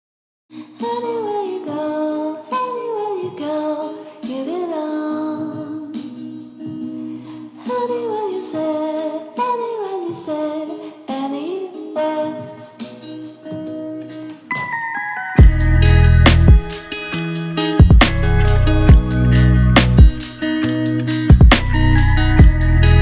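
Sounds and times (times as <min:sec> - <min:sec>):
person singing over accompaniment: 0:00.6 - 0:15.8.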